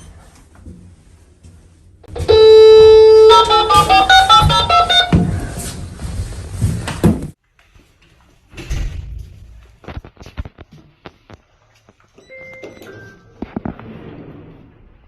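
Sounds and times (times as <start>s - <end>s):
loud steady horn-like tone: 2.1s - 5.6s.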